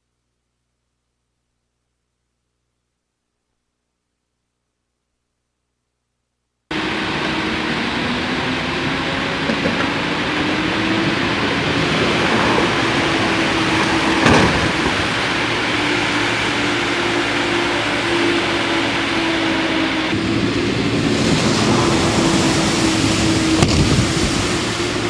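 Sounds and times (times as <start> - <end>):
boat engine running: 6.7 - 25.0
wind and water rushing: 6.7 - 25.0.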